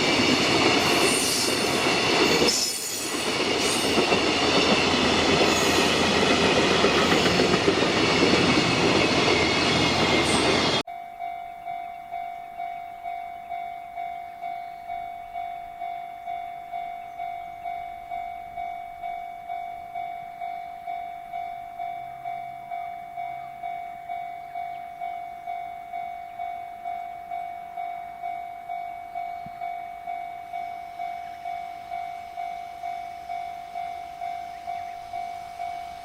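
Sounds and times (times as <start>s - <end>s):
freight train wheel and rail clatter: 0.0s - 10.8s, 14.0s - 36.0s
level crossing alarm bell: 8.6s - 36.0s.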